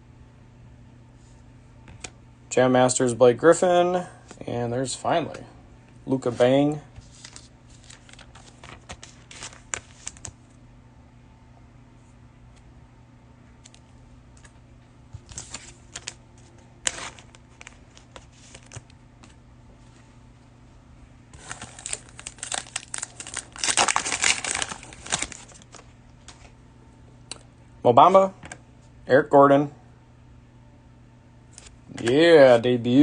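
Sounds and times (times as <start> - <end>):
cellophane crinkling and tearing: 7.0 - 10.4, 15.2 - 18.9, 21.4 - 26.5.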